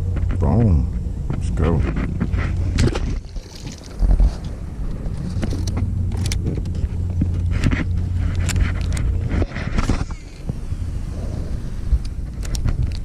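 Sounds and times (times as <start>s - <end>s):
boat engine hum and rumble: 0.0s - 13.0s
clicks and knocks of handling: 5.2s - 10.5s, 12.0s - 13.0s.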